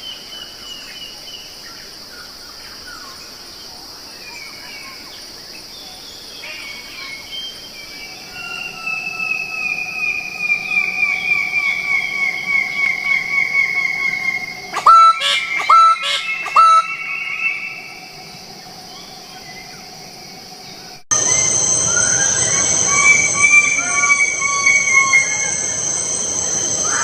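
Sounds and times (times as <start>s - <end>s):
insects droning: 0.0s - 27.0s
bird calling: 8.0s - 18.3s, 21.1s - 27.0s.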